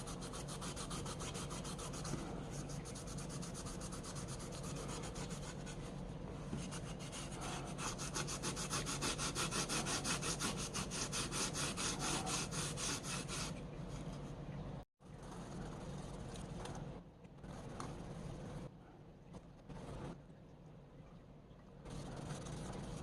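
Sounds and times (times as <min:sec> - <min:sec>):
rapid rubbing strokes: 0:00.0 - 0:06.0, 0:06.6 - 0:14.1.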